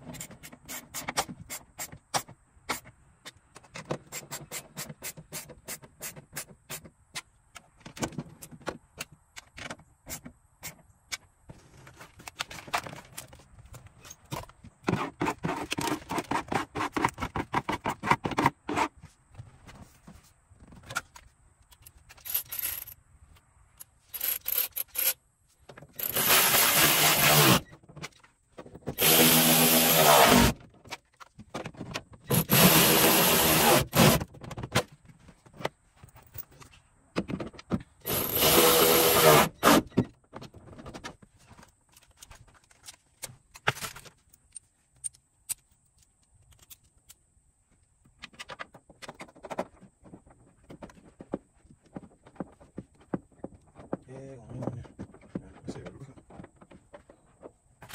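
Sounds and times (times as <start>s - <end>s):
handheld power tool running: 26.0s - 27.6s, 29.0s - 30.6s, 32.3s - 34.2s, 38.0s - 39.8s
small clicks and knocks: 40.0s - 54.0s.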